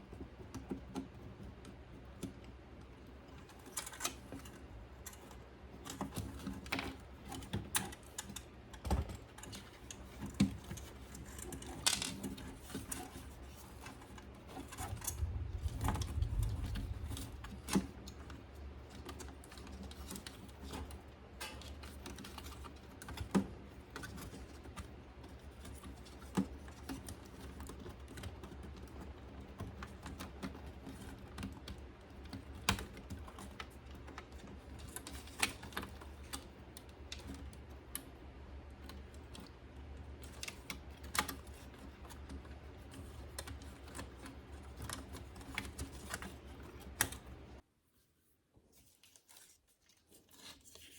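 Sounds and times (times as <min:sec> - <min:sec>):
low rumble: 0:14.9 - 0:18.0.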